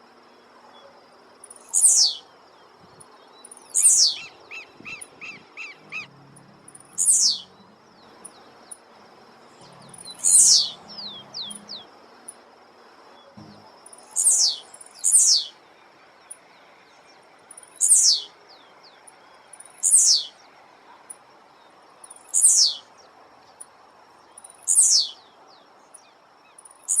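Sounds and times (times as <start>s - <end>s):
bird whistle sweeping downward: 3.8s - 6.1s, 10.0s - 11.8s.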